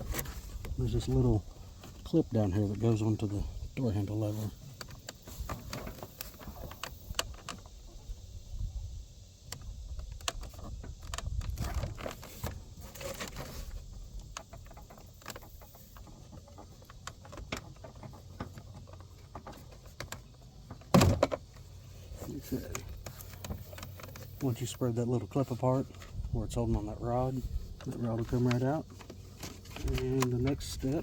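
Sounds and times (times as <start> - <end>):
plastic and metal parts rattling: 4.2 - 7.7, 10.0 - 31.0
small clicks and taps of parts: 9.5 - 12.5.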